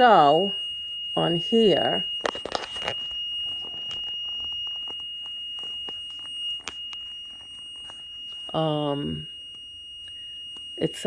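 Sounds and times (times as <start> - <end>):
high-pitched alarm tone: 0.0 - 11.0
handling clicks and rustles: 2.2 - 8.3.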